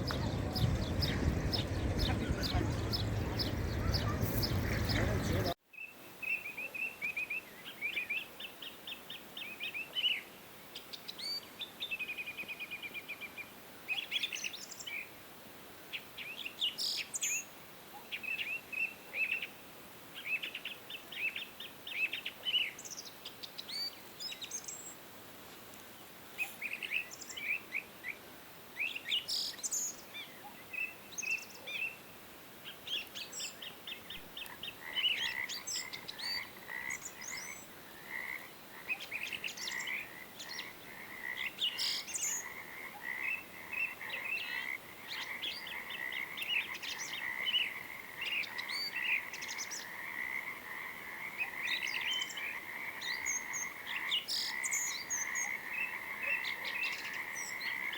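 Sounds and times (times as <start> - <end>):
frogs croaking: 0.0 - 5.5, 34.4 - 57.9
birds chirping: 0.0 - 5.6.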